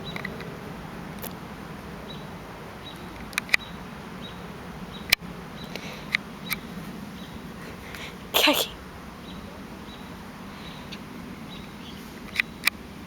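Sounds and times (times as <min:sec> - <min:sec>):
cat sneezing: 0:08.4 - 0:08.8.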